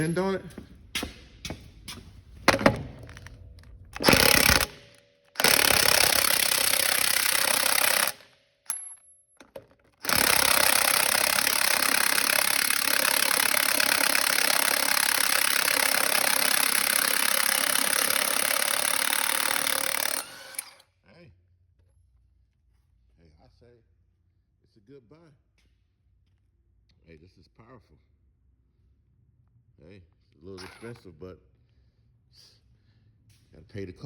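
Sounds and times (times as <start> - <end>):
impact wrench hammering: 4.0 - 20.8
wrench clicks: 4.0 - 20.8.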